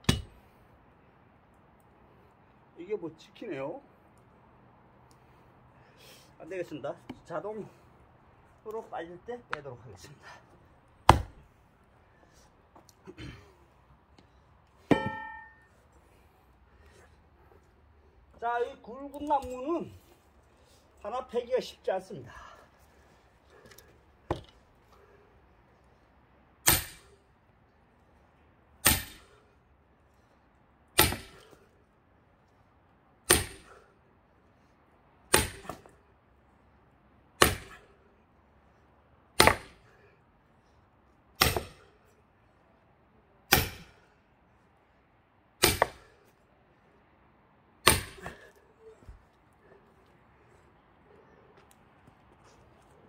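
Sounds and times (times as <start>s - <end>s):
axe striking log: 0.0s - 0.4s, 11.0s - 11.4s, 14.9s - 15.7s, 24.3s - 24.6s, 26.6s - 27.1s, 28.8s - 29.4s, 31.0s - 31.6s, 33.3s - 33.8s, 35.3s - 35.9s, 37.4s - 37.9s, 39.4s - 39.9s, 41.4s - 41.9s, 43.5s - 44.0s, 45.6s - 46.2s, 47.8s - 48.6s.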